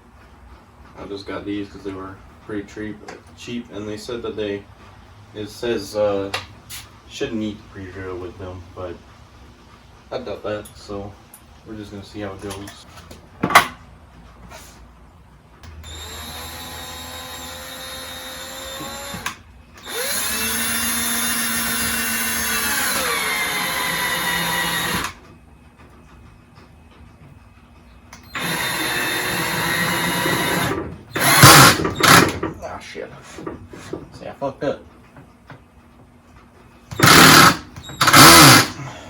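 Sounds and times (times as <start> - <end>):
power drill driving screws: 15.8 - 25.2, 28.2 - 32.4, 36.9 - 38.8.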